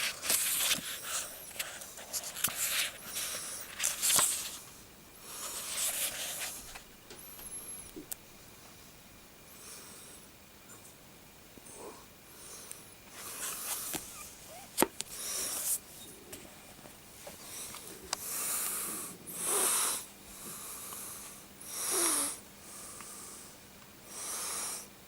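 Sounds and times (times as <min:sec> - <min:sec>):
person breathing heavily: 0:17.4 - 0:24.9.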